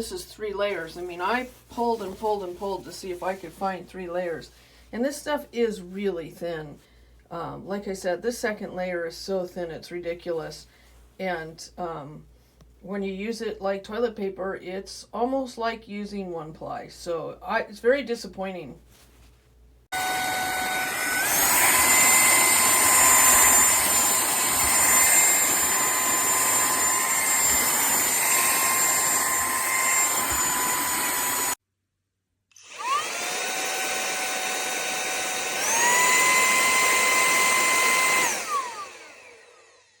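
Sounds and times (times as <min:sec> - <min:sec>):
handheld vacuum motor whining: 0:20.0 - 0:31.6, 0:32.5 - 0:40.0.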